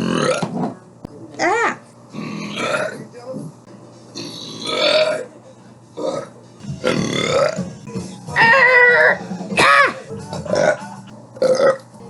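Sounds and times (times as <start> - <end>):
person burping: 0.0 - 0.4, 2.2 - 3.0, 4.2 - 5.3, 6.0 - 7.7, 8.9 - 10.8, 11.4 - 11.8.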